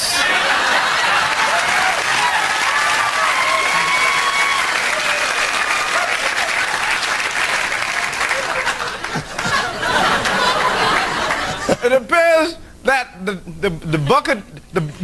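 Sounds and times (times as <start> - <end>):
audience applauding: 0.0 - 11.8.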